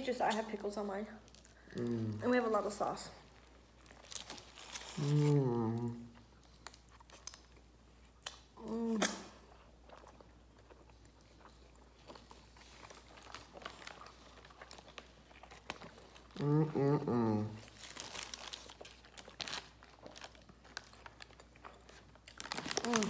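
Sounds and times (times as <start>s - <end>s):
person humming: 1.7s - 2.2s, 5.0s - 6.2s, 8.6s - 9.3s, 16.4s - 17.6s
chewing and biting food: 9.5s - 16.4s.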